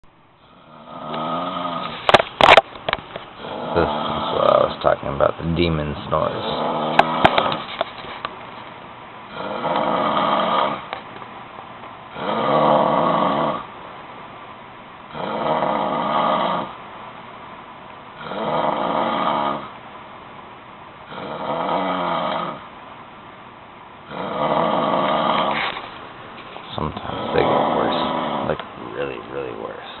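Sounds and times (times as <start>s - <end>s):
person snoring loudly: 0.5s - 2.0s, 3.4s - 4.7s, 6.4s - 7.6s, 9.3s - 10.9s, 12.1s - 13.7s, 15.1s - 16.8s, 18.2s - 19.7s, 21.1s - 22.7s, 24.1s - 25.6s, 27.0s - 28.6s.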